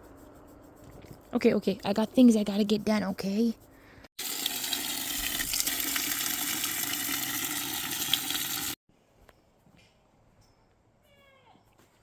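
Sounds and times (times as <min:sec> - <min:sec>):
water running into a container: 0:04.2 - 0:08.8.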